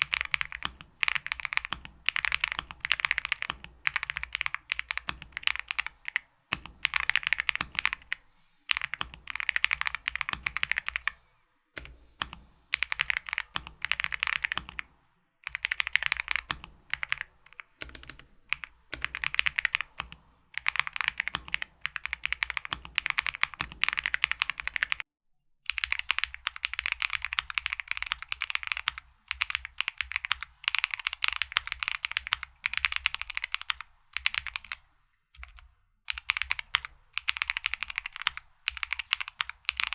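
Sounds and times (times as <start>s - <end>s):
mechanical keyboard typing: 0.0s - 11.2s, 11.8s - 25.0s, 25.7s - 34.8s, 35.4s - 39.9s.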